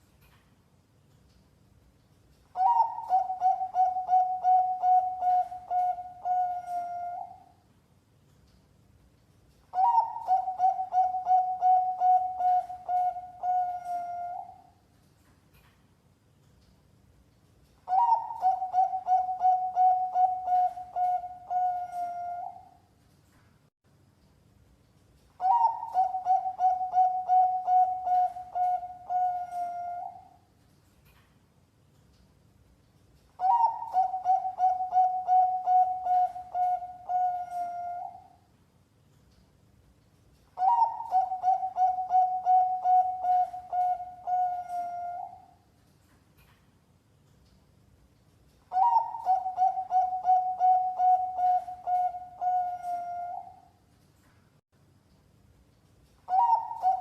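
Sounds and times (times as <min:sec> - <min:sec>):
dove cooing: 0:02.6 - 0:07.5, 0:09.7 - 0:14.7, 0:17.9 - 0:22.8, 0:25.4 - 0:30.3, 0:33.4 - 0:38.3, 0:40.6 - 0:45.6, 0:48.7 - 0:53.6, 0:56.3 - 0:57.0.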